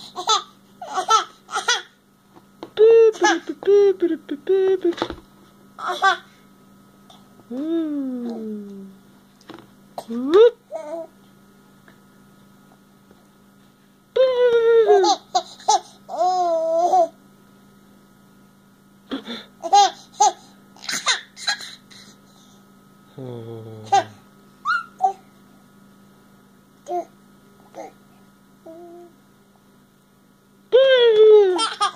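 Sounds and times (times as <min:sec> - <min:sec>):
faint electrical hum: 0:00.0 - 0:31.9
baby laughing and squealing: 0:24.6 - 0:25.1, 0:31.5 - 0:31.9.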